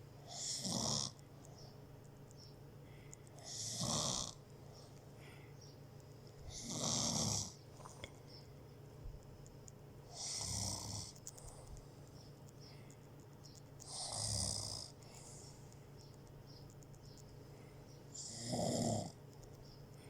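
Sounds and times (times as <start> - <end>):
hissing snores: 0.3 - 1.2, 3.4 - 4.4, 6.5 - 7.6, 10.1 - 11.2, 13.8 - 15.0, 18.2 - 19.2.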